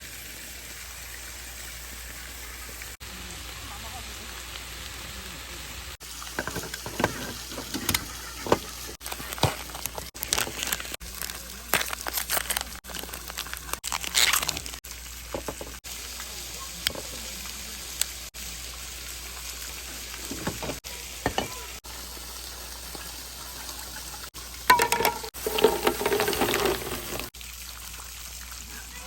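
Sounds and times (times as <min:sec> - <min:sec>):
food sizzling in a frying pan: 0:00.0 - 0:29.0
utensils clicking and knocking: 0:06.3 - 0:10.6, 0:24.7 - 0:27.3.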